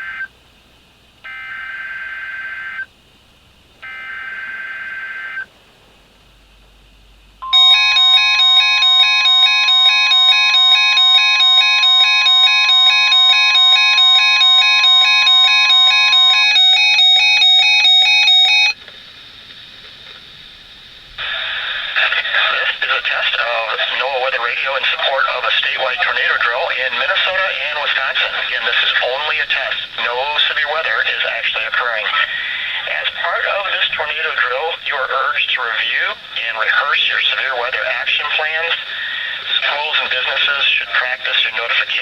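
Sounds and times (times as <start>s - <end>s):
steady warning alarm tone: 3.8s - 5.5s, 7.4s - 18.8s, 22.5s - 36.2s
low hiss: 5.3s - 8.8s, 18.7s - 42.0s
rapidly pulsing electronic beep: 7.4s - 18.8s.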